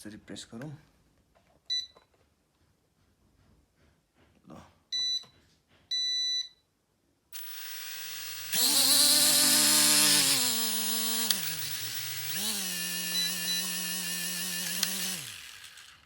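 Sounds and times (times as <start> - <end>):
drone motors whining: 7.4 - 16.0.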